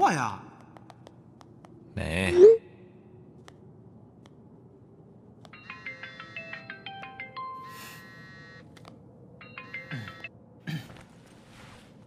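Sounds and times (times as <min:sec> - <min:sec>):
mobile phone ringtone melody: 0:05.6 - 0:08.7, 0:09.4 - 0:10.3.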